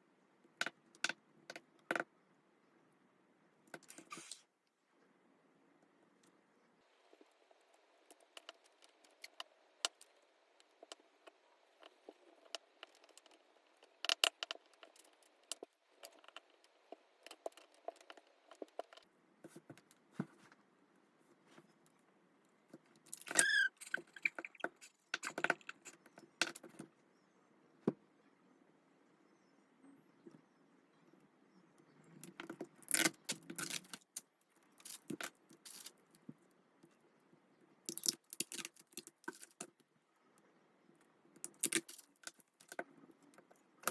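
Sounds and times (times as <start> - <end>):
brief falling squeak: 23.4 - 24.4.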